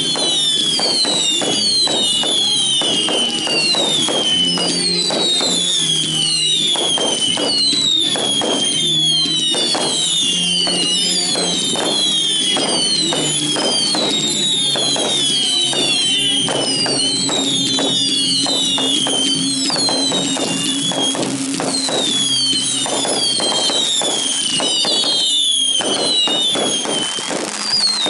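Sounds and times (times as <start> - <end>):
fireworks popping: 0.0 - 28.0
fireworks whistling: 0.0 - 28.0.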